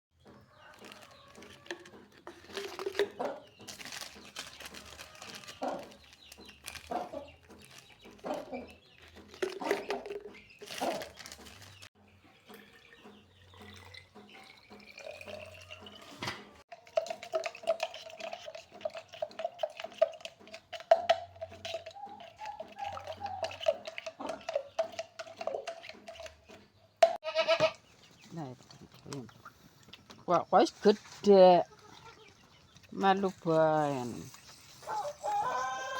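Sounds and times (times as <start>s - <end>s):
goats sucking and slurping: 0.9s - 3.6s, 12.4s - 26.8s, 27.4s - 35.9s
baby goat calls: 27.2s - 27.8s.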